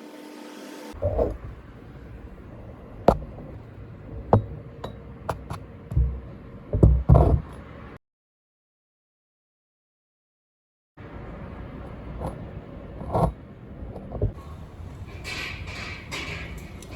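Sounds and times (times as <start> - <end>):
dull thuds: 5.3 - 7.6
metal tools clinking: 14.4 - 16.9.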